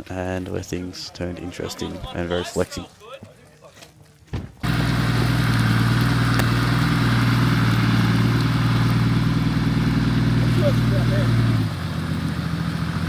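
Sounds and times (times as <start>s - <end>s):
car engine running: 4.6s - 13.0s.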